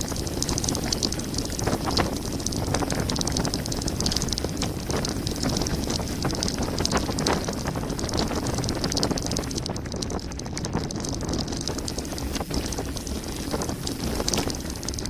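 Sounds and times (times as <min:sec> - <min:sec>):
wind buffeting microphone: 0:00.0 - 0:15.0
bike rattling: 0:09.4 - 0:15.0.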